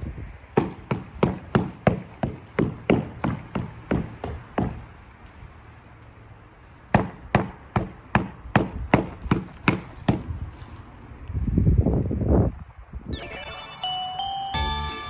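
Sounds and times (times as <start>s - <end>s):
sharp knocks: 0.6s - 4.8s, 7.0s - 10.3s.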